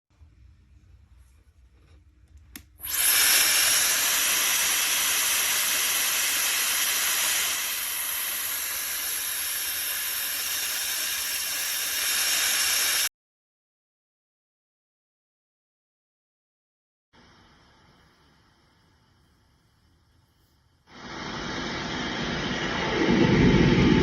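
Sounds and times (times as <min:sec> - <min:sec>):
hair dryer running with whine: 0:02.8 - 0:13.1, 0:20.9 - 0:24.0.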